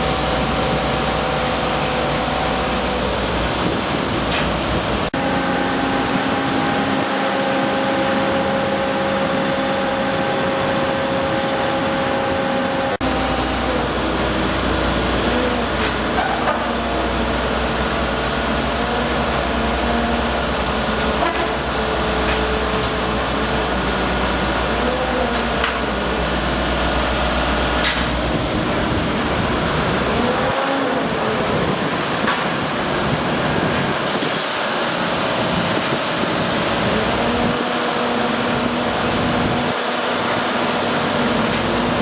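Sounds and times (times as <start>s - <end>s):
mechanical drone with hum: 0.0s - 42.0s.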